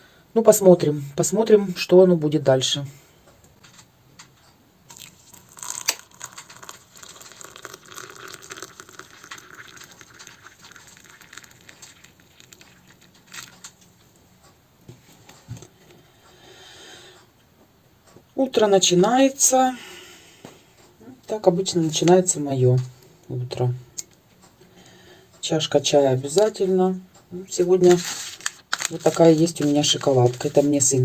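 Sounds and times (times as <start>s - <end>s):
small clicks and knocks: 3.4s - 4.6s
rustling and crinkling: 3.5s - 16.0s, 27.6s - 31.0s.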